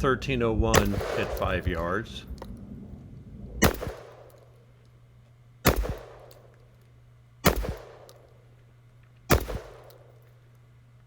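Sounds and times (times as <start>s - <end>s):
loud shotgun shots: 0.7s - 2.0s, 3.6s - 4.4s, 5.6s - 6.5s, 7.4s - 8.2s, 9.3s - 10.2s.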